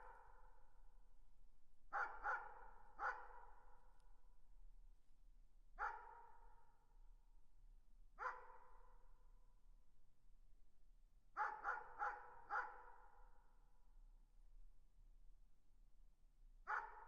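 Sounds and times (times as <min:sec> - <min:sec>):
distant dog barking: 0:02.0 - 0:03.4, 0:05.8 - 0:06.2, 0:08.2 - 0:08.6, 0:11.4 - 0:12.8, 0:16.7 - 0:17.0.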